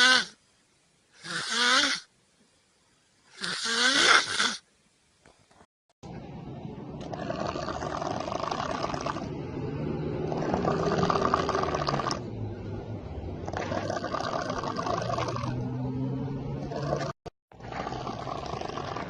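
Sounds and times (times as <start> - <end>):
person snoring: 1.2 - 2.1, 3.4 - 4.6, 7.1 - 9.3, 10.2 - 12.2, 13.5 - 15.6.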